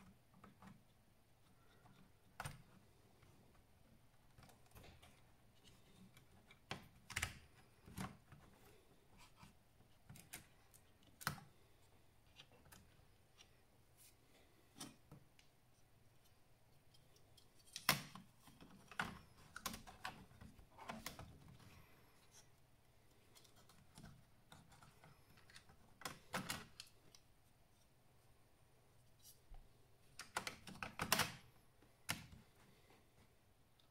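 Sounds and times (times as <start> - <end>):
laptop keys clicking and tapping: 30.2 - 31.5.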